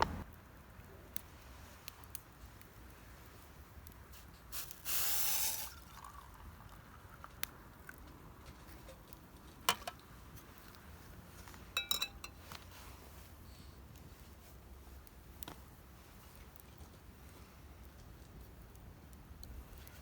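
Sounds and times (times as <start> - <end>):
brief hiss: 4.5 - 5.8
light ringing clinks: 11.8 - 12.4.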